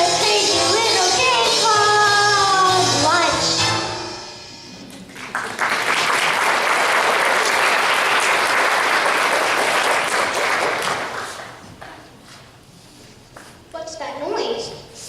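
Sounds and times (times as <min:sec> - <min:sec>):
audience applauding: 0:04.9 - 0:11.6.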